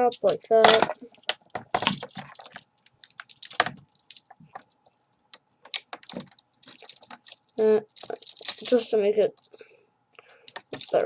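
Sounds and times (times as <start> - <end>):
handcuffs clicking and jingling: 0.1 - 4.8, 5.7 - 8.8, 10.5 - 11.0
handcuffs clacking: 0.2 - 5.0, 5.7 - 8.8, 10.5 - 11.0.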